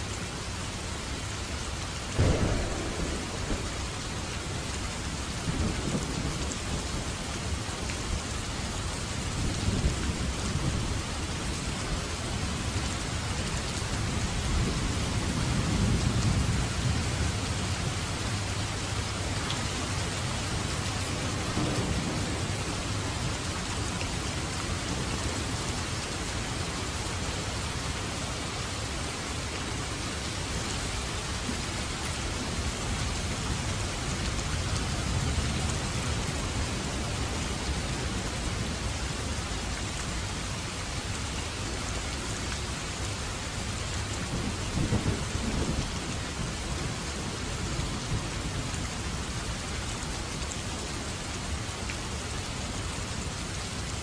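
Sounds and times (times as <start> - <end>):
steady rain falling: 0.0 - 54.0
low rolling thunder: 2.1 - 8.2, 13.4 - 28.0, 44.0 - 49.6.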